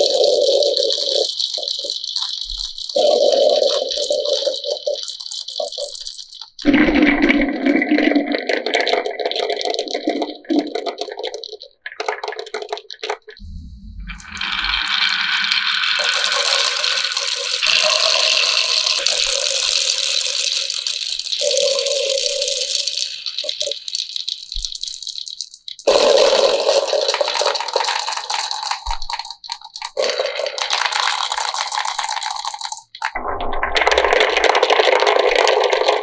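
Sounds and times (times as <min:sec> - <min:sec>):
marbles rolling and clattering: 0:14.8 - 0:23.6, 0:25.8 - 0:36.0.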